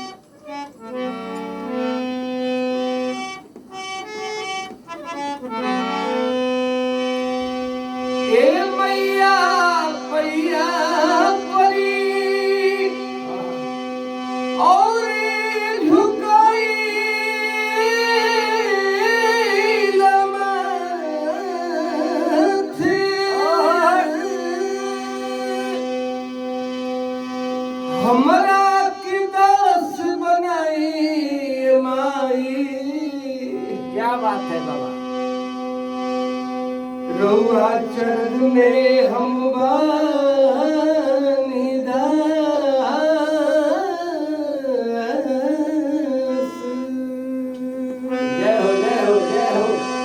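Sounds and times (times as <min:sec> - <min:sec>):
harmonium drone and chords: 0:00.0 - 0:50.0
man singing sliding notes: 0:08.2 - 0:26.0, 0:27.9 - 0:34.6, 0:37.1 - 0:50.0.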